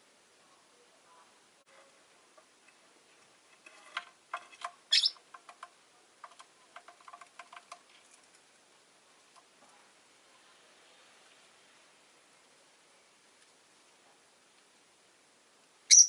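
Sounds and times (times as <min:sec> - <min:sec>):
lovebird chirps and clicks: 0:04.9 - 0:05.2.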